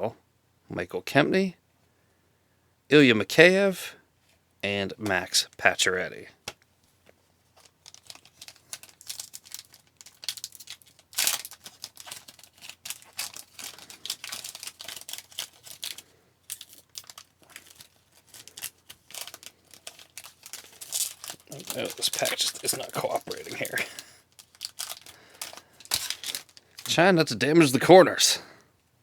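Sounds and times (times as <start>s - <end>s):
wrapper crinkling and tearing: 7.5s - 28.3s.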